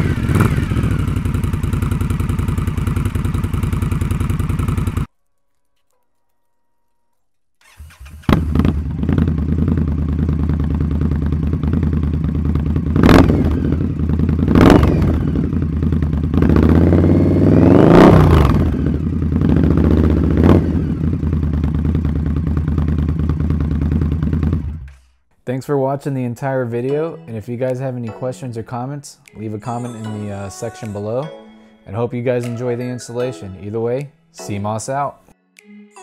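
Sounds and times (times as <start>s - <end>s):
motorcycle engine starting and idling: 0.0s - 5.1s, 7.6s - 25.2s
motorcycle throttle blips: 0.0s - 5.1s, 7.6s - 25.0s.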